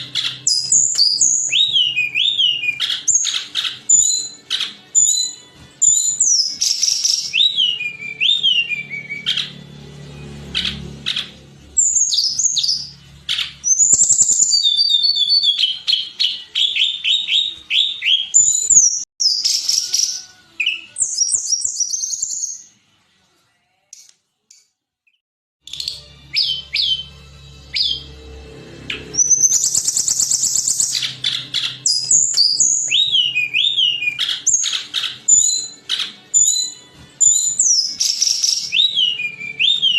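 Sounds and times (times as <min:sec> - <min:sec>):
bird singing whistled phrases: 0:00.1 - 0:09.5, 0:11.8 - 0:22.7, 0:29.0 - 0:39.9.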